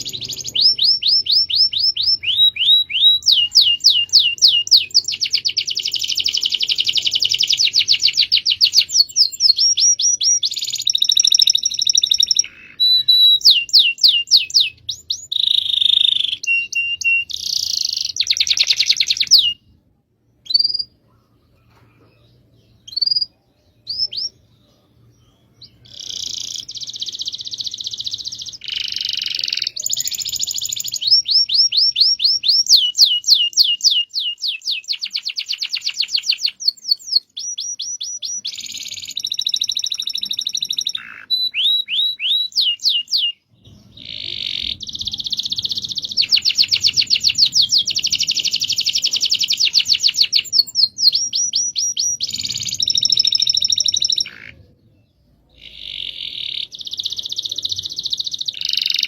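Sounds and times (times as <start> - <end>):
canary singing trills: 0.0 - 59.0.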